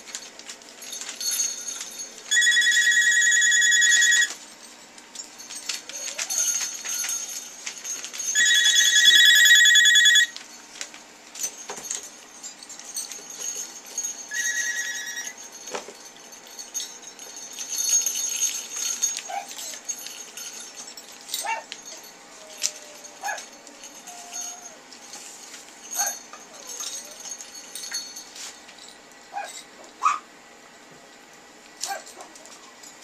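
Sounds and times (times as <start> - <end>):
sleigh bells jingling: 0.8 - 4.6, 5.2 - 10.4, 11.4 - 29.6
puppies whimpering and yipping: 21.4 - 24.9.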